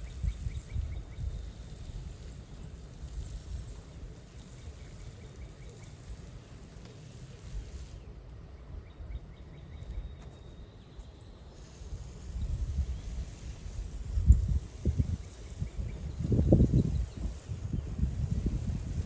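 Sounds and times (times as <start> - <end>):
wind rumbling on microphone: 0.0 - 5.6, 11.6 - 19.0.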